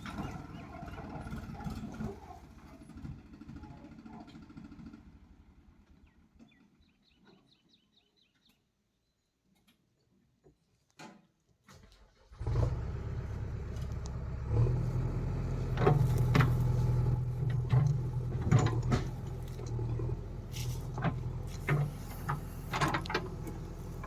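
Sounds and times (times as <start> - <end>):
diesel engine running: 0.0 - 5.7, 12.4 - 24.0
metal clanks: 15.6 - 24.0.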